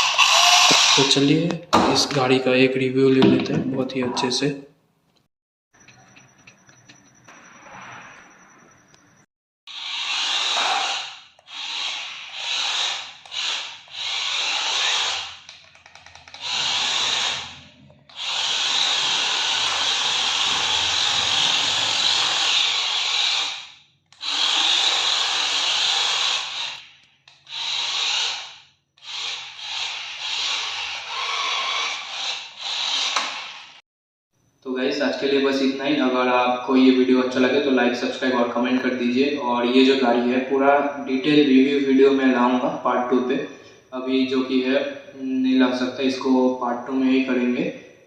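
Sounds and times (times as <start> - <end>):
toy car electric motor whirring: 0.0 - 1.2, 9.7 - 33.8.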